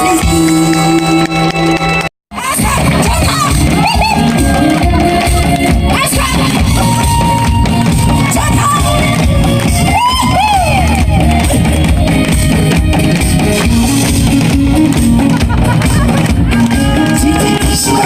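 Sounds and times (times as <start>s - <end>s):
loud music with heavy beat: 0.0s - 18.0s
crowd shouting and whooping: 3.4s - 9.0s, 9.7s - 11.6s.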